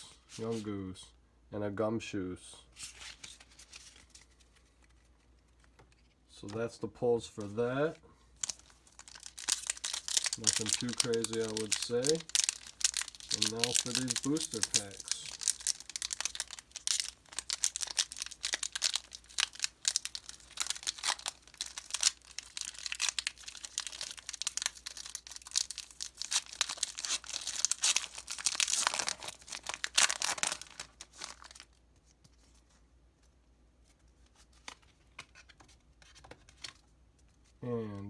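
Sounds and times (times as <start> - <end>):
wrappers tearing and crinkling: 8.4 - 31.8.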